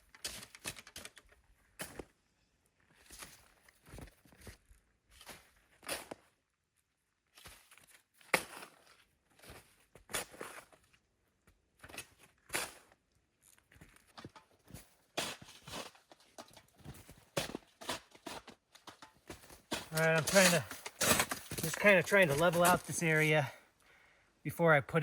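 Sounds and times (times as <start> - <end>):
footsteps crunching: 13.8 - 23.5.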